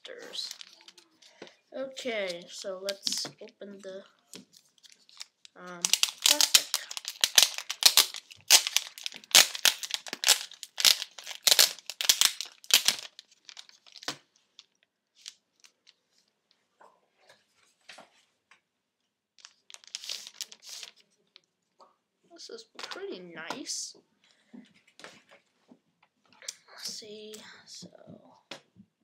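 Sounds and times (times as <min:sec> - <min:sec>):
plastic wrapping crinkling: 0:00.0 - 0:03.6, 0:04.2 - 0:16.3, 0:19.4 - 0:21.5.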